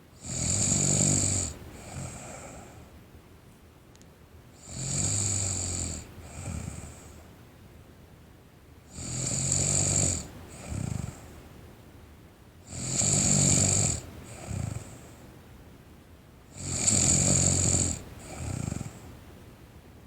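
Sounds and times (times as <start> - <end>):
girl snoring: 0.2 - 2.7, 4.6 - 7.0, 9.0 - 11.2, 12.7 - 15.0, 16.6 - 19.1.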